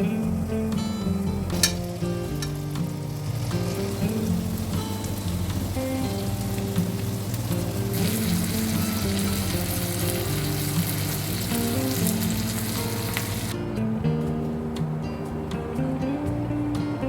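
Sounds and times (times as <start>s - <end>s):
food sizzling in frying: 0.0s - 13.6s
background music: 0.0s - 17.0s.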